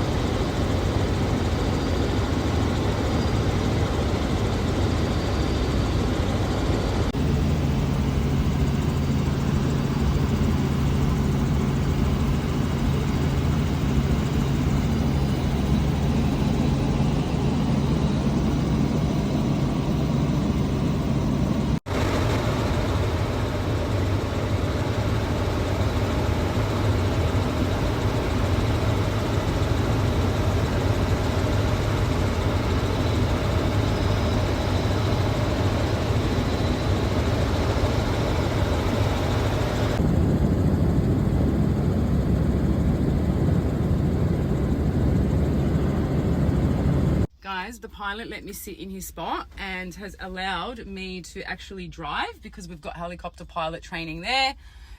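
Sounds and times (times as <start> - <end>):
helicopter engine and rotor drone: 0.0 - 47.3.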